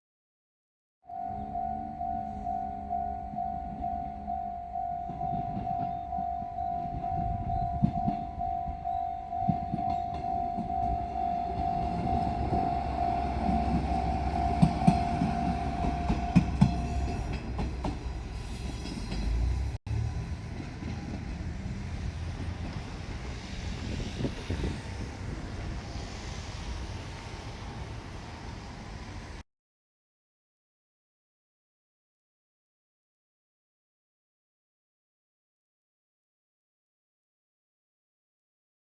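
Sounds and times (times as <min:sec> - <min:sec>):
level-crossing alarm tone: 0:01.1 - 0:17.6
diesel railcar rumbling: 0:01.1 - 0:29.4
wheels clacking over rail joints: 0:05.0 - 0:25.8.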